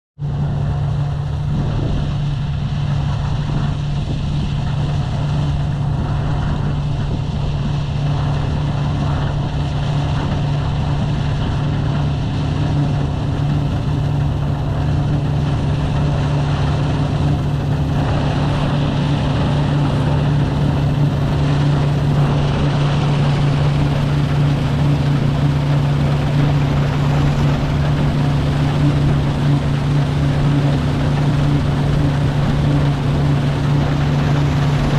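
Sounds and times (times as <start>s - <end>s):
combine harvester engine drone: 0.2s - 34.9s
machinery rushing noise: 0.2s - 34.9s.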